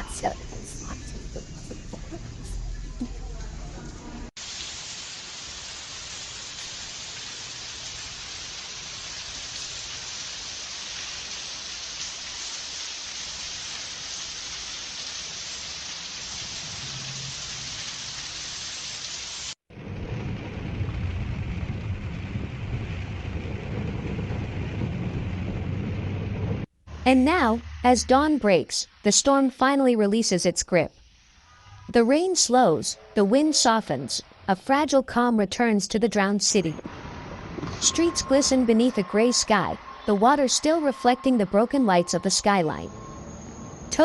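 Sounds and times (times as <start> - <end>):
heavy rain hissing: 0.0 - 29.2
low rumble: 19.7 - 28.2.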